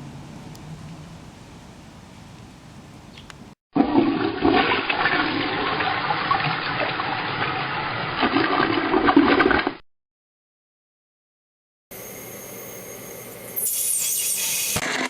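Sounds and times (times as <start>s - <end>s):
toilet flushing: 3.8s - 9.8s.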